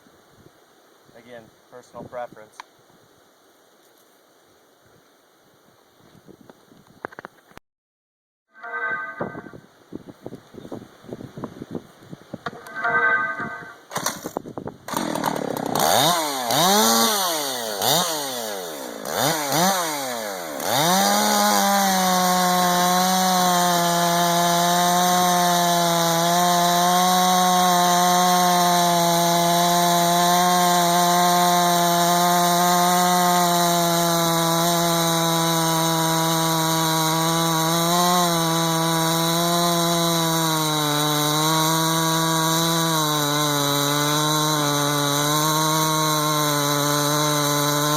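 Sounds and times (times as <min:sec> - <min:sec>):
chainsaw revving and cutting wood: 0:13.9 - 0:47.9.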